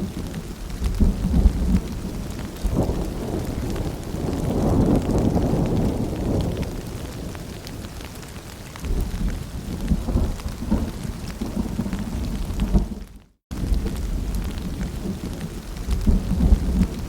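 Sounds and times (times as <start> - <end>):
rain pattering: 0.0 - 17.0.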